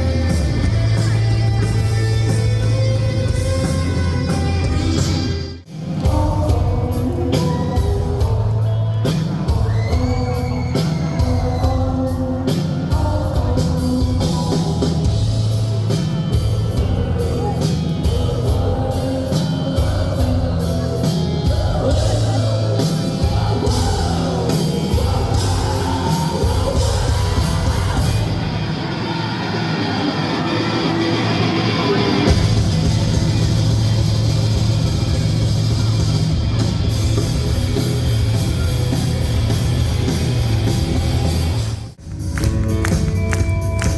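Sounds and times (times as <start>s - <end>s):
drums: 0.0s - 43.9s
electric guitars: 0.0s - 43.9s
person singing: 5.8s - 29.5s.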